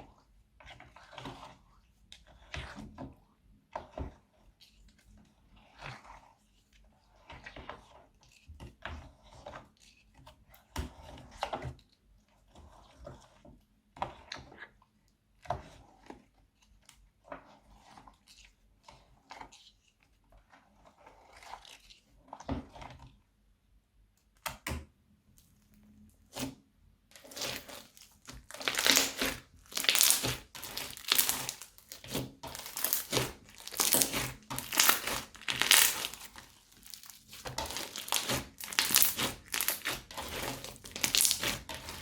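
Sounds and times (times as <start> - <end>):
crunchy slime crackling: 27.1 - 42.0.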